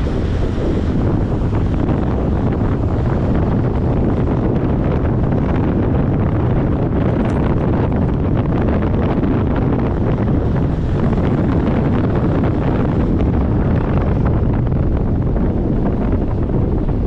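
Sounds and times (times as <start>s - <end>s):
waves breaking on beach: 0.0s - 6.0s
wind buffeting microphone: 0.0s - 17.0s.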